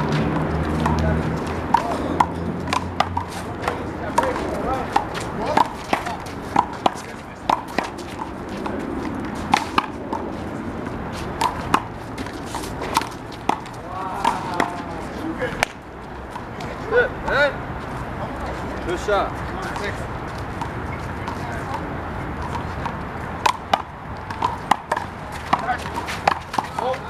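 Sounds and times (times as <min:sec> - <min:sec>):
faint voices: 0:13.8 - 0:15.6.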